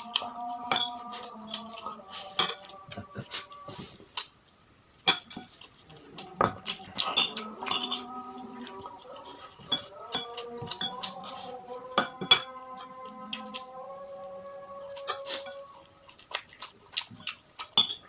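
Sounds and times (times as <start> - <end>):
cutlery clinking against a bowl: 0.0 - 2.9, 5.0 - 13.7, 14.9 - 15.7, 16.4 - 18.0
faint steady tones: 0.0 - 18.0.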